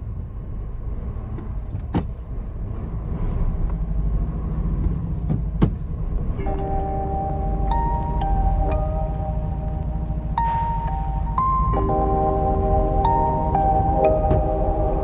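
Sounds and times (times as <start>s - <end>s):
road noise: 0.0s - 15.0s
truck engine rumble: 0.0s - 15.0s
music with bell-like chimes: 6.4s - 15.0s.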